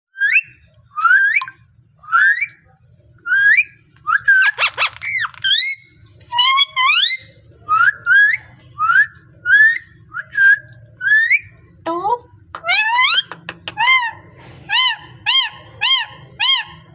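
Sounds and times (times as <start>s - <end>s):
parrot whistling: 0.2s - 2.6s, 3.3s - 11.6s
harsh buzzy parrot call: 3.3s - 7.3s.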